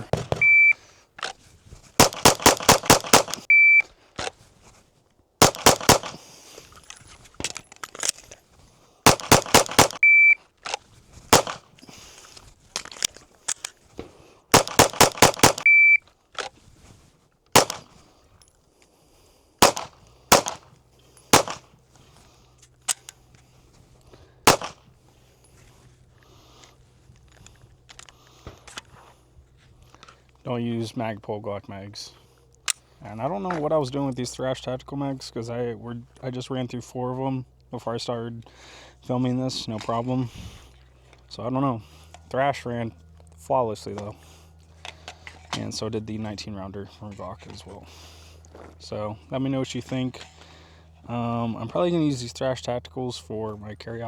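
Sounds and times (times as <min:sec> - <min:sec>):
pistol shots: 0:00.0 - 0:00.7, 0:02.0 - 0:03.5, 0:05.4 - 0:06.3, 0:09.1 - 0:10.1, 0:11.3 - 0:11.7, 0:14.5 - 0:15.7, 0:17.6 - 0:18.0, 0:19.6 - 0:20.7, 0:21.3 - 0:21.7, 0:24.5 - 0:24.9
electronic shot-timer beep: 0:00.4 - 0:00.8, 0:03.5 - 0:03.9, 0:10.0 - 0:10.4, 0:15.6 - 0:16.0.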